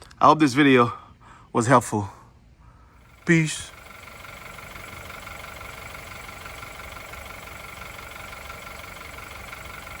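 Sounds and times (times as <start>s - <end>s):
car engine idling: 3.0s - 10.0s.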